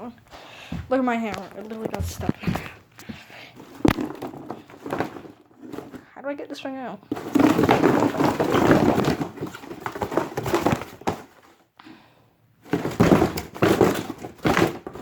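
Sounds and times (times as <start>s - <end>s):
cardboard box crumpling and tearing: 7.2s - 11.2s.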